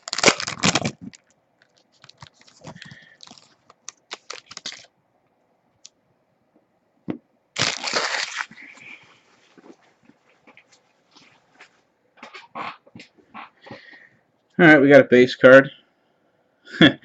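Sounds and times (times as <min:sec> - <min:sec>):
foil tearing: 0:00.0 - 0:01.2, 0:02.0 - 0:04.9, 0:07.6 - 0:08.7
foil pack crinkling: 0:00.0 - 0:04.9, 0:07.6 - 0:09.0.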